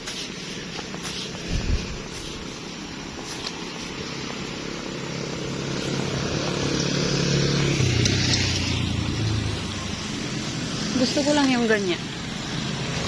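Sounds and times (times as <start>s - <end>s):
vehicle engine passing by: 4.0s - 13.0s.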